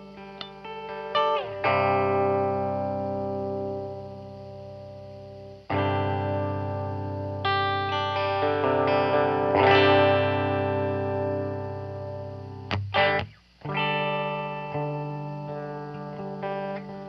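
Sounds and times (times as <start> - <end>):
electric guitar chords: 0.0 - 17.0
guitar slide: 0.0 - 17.0.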